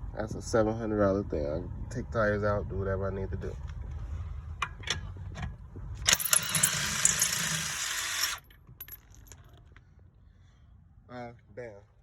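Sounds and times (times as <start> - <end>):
impact wrench rattling: 6.1 - 9.6.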